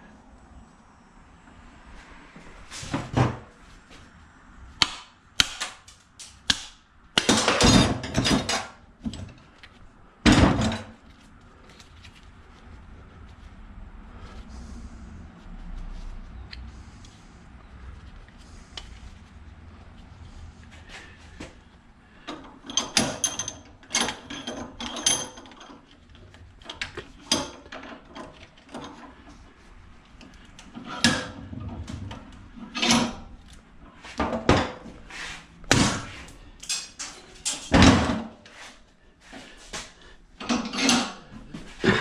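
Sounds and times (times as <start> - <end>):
scrap parts and tools clattering: 7.2 - 9.6, 10.3 - 11.2, 22.2 - 29.4, 30.6 - 42.0.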